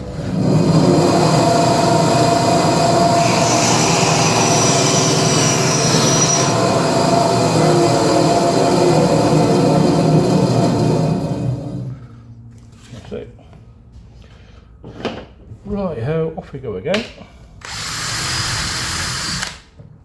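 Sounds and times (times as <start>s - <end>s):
power saw cutting timber: 0.3s - 11.8s.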